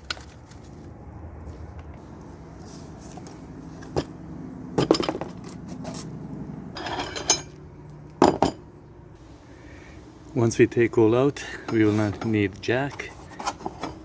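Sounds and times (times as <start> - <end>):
metal tools clinking and knocking: 4.8 - 6.1, 6.8 - 7.6, 11.6 - 14.0.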